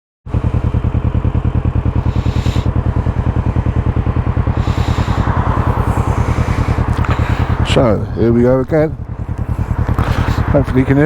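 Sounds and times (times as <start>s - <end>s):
motorcycle engine running: 0.2s - 11.0s
rushes of hiss: 2.0s - 2.8s, 4.6s - 6.8s.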